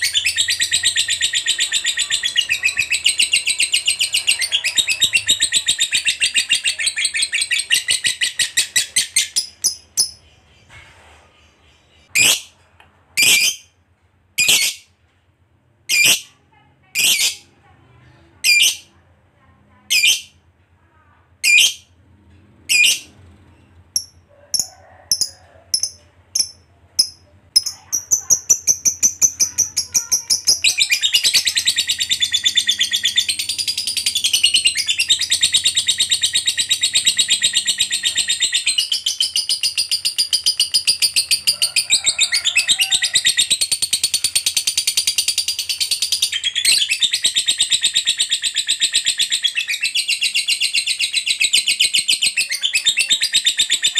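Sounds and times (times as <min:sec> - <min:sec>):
lovebird chattering trill: 0:24.0 - 0:53.9.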